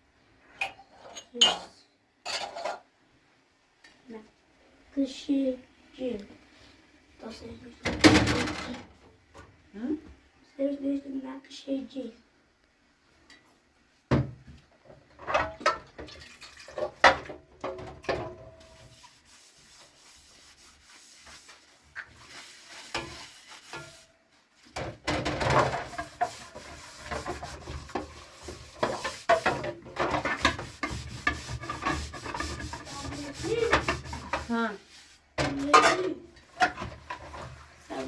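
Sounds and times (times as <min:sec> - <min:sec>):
kitchen things knocking and clattering: 0:00.6 - 0:02.9, 0:07.8 - 0:08.9, 0:15.1 - 0:18.8, 0:24.7 - 0:34.5, 0:35.4 - 0:37.7
rubbing and scraping: 0:18.6 - 0:38.0.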